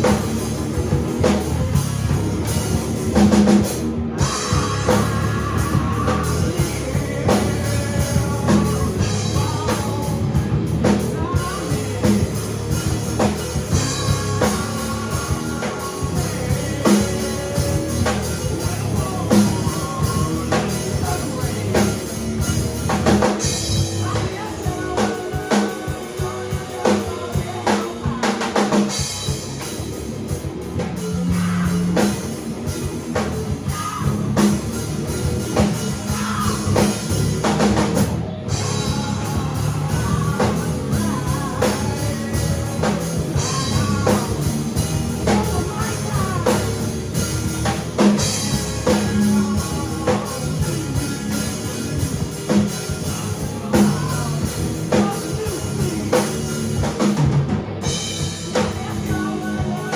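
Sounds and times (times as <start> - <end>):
bass notes: 0.0 - 59.9
drum kit: 0.0 - 59.9
electric guitar: 0.0 - 59.9.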